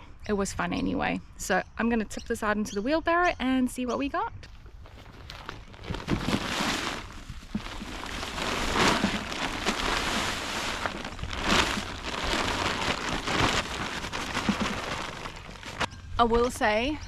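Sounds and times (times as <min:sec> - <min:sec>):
soil pouring into wheelbarrow: 0:05.0 - 0:15.9.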